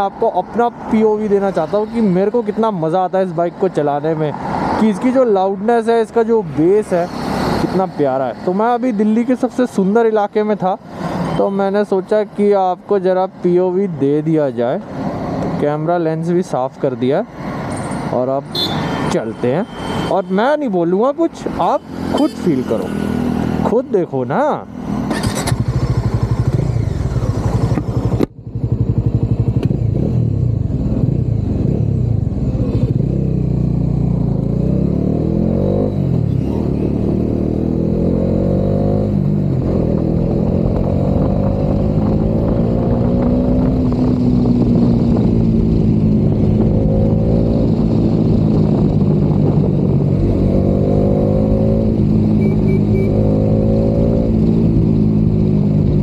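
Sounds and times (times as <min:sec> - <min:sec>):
motorcycle engine shifting gears: 0:24.8 - 0:56.0.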